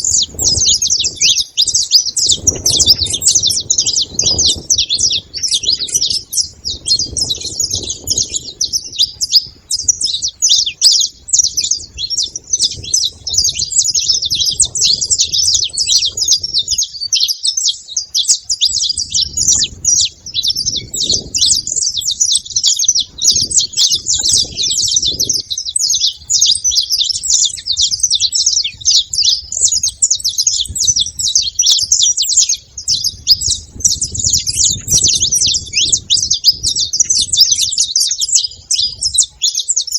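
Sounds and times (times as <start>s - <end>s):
finches chirping: 0.0s - 39.9s.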